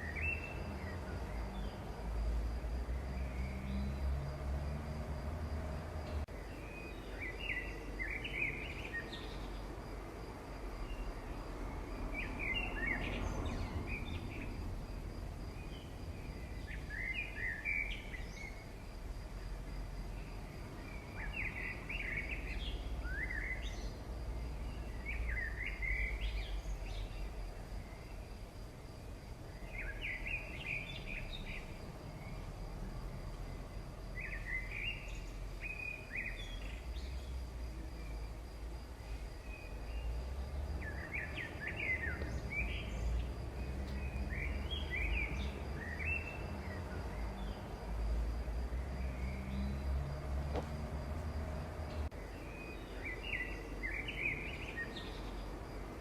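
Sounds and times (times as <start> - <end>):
songbird chirping: 0.0 - 56.0.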